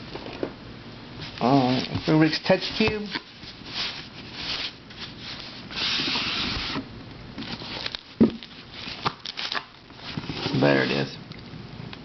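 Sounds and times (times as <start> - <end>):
rubbing and scraping handling noise: 1.2 - 6.8, 7.4 - 11.0.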